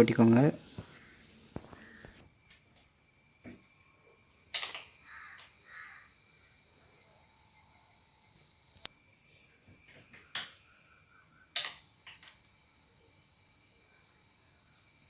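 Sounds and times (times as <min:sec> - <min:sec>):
high-pitched electric buzzer: 0:04.6 - 0:08.9.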